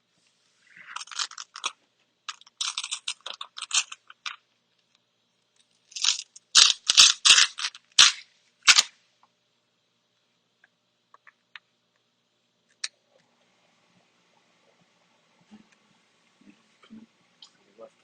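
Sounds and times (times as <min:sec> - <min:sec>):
vinyl sheet crinkling: 0:00.2 - 0:04.4, 0:05.6 - 0:08.9.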